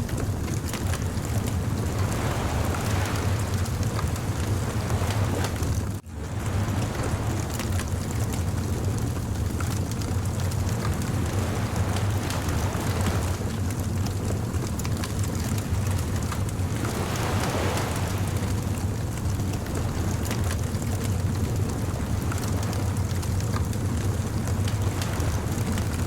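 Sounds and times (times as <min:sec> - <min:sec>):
bonfire crackling and popping: 0:00.0 - 0:25.9
surf washing: 0:00.0 - 0:26.0.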